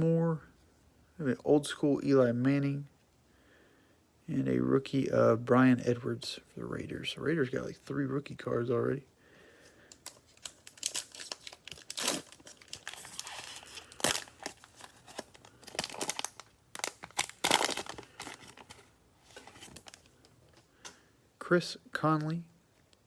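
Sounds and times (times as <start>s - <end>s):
cellophane wrapper crinkling and tearing: 9.9s - 20.6s.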